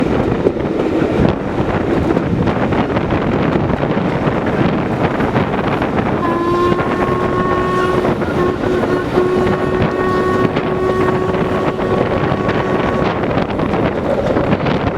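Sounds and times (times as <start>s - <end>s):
wind buffeting the microphone: 0.0s - 14.9s
steam locomotive whistle: 6.0s - 14.0s.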